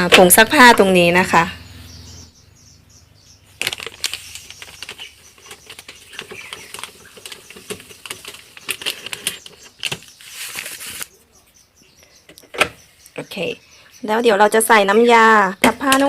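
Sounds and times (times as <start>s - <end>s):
plastic packaging crackling: 3.5s - 11.2s.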